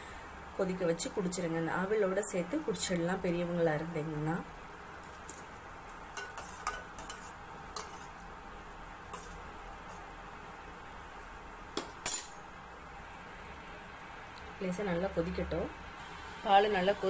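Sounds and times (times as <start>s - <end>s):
faint steady hiss: 0.0s - 17.0s
metal spoon clinking against pan: 6.2s - 8.1s.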